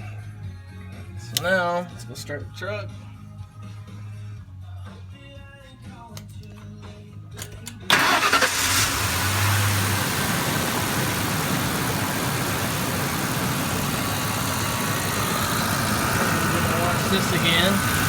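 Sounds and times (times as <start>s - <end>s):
truck engine starting and idling: 7.4s - 18.0s.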